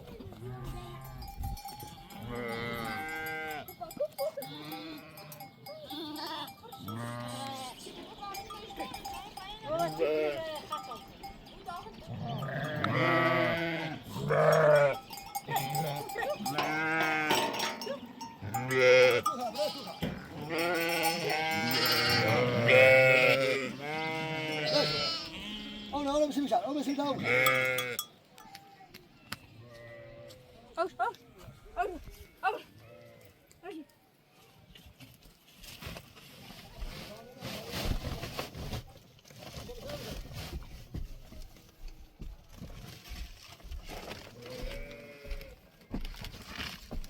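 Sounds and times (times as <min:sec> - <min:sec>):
sheep bleating: 0:02.0 - 0:03.7, 0:04.4 - 0:07.9, 0:09.6 - 0:11.0, 0:12.1 - 0:26.4, 0:27.1 - 0:28.1, 0:44.4 - 0:45.6.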